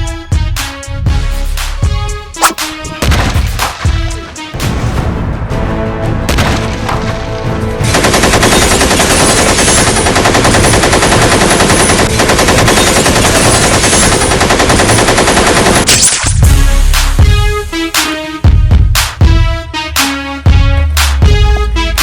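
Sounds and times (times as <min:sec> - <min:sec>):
background music: 0:00.0 - 0:22.0
rapid automatic gunfire: 0:07.8 - 0:16.1
music with heavy bass beats: 0:16.4 - 0:19.7, 0:20.5 - 0:22.0.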